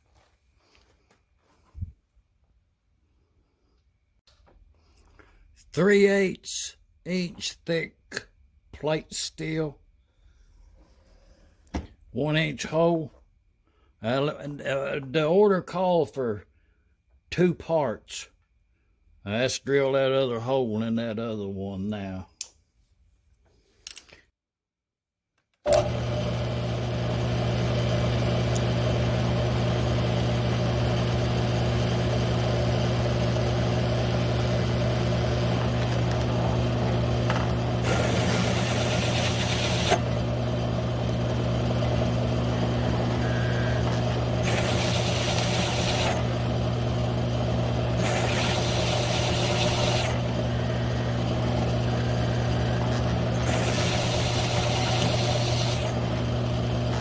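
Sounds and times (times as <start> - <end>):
electric motor humming: 25.7 - 57.0.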